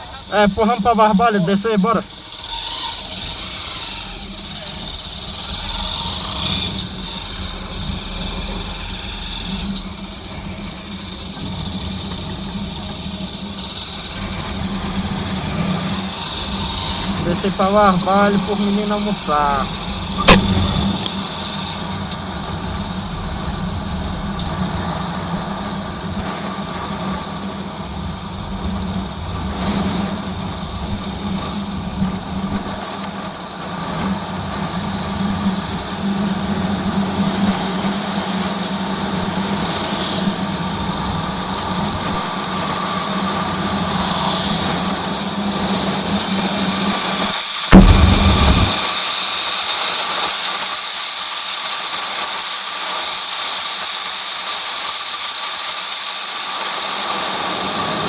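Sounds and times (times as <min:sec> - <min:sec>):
motorcycle engine running: 0:02.1 - 0:32.7, 0:47.7 - 0:48.8
sharp thump: 0:20.2 - 0:21.2, 0:47.7 - 0:49.0.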